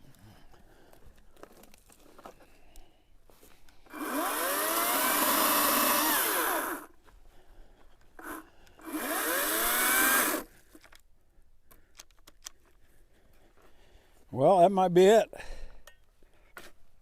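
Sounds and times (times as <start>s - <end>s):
battery chainsaw running: 3.9s - 6.9s, 8.2s - 10.5s.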